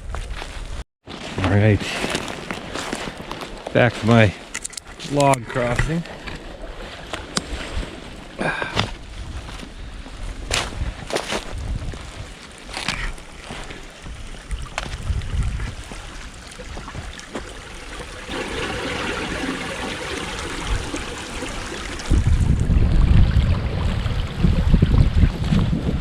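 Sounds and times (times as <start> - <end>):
stream running: 2.0 - 8.8, 11.8 - 25.7
wind buffeting microphone: 5.6 - 26.0.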